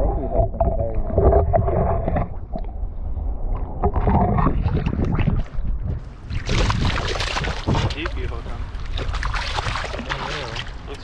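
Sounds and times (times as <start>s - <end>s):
wind buffeting microphone: 0.0s - 11.0s
water splashing: 3.6s - 11.0s.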